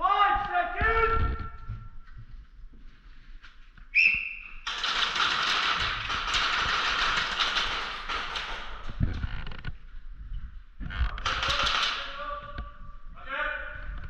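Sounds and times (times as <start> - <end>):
airsoft guns firing clicks: 4.6 - 8.9, 11.2 - 12.2.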